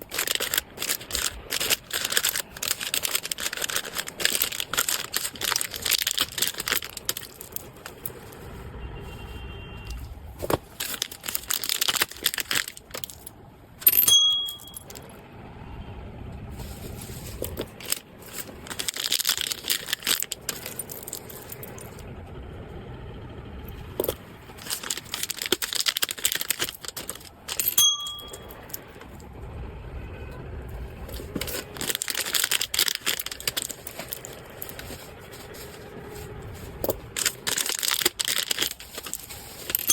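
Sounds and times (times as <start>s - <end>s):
packaging crinkling and rustling: 0.0s - 13.4s, 16.6s - 22.0s, 24.0s - 29.2s, 31.0s - 39.9s
short metallic pings: 13.9s - 14.8s.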